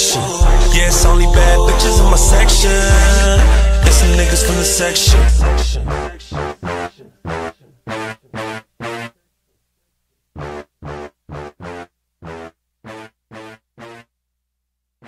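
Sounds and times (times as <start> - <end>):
instrumental hip hop music: 0.0 - 9.2.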